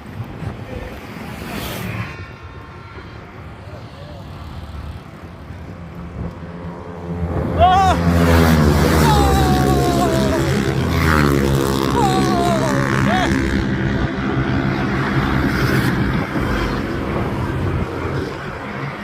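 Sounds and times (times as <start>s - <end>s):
motor vehicle passing: 1.2s - 19.0s
noisy rumble: 4.7s - 18.7s.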